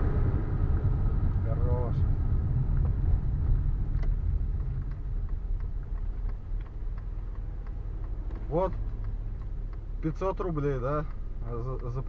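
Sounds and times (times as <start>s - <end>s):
car engine and road rumble: 0.0s - 12.0s
faint ticks: 2.8s - 12.0s.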